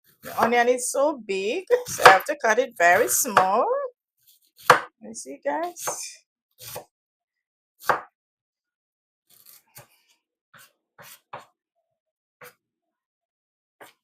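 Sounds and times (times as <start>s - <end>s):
knife chopping onion on board: 1.9s - 2.3s, 4.6s - 4.9s, 7.8s - 8.1s.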